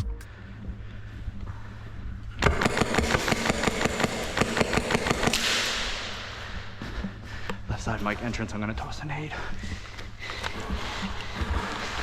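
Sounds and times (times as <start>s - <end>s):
airsoft gun shots: 2.4s - 6.1s.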